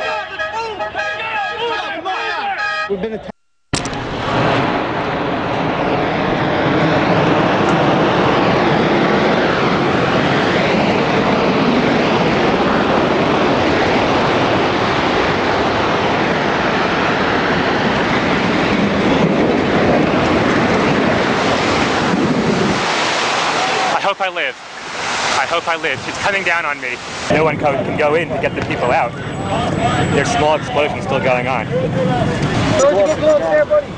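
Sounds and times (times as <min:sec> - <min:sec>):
building collapsing with loud roar: 0:03.8 - 0:24.5.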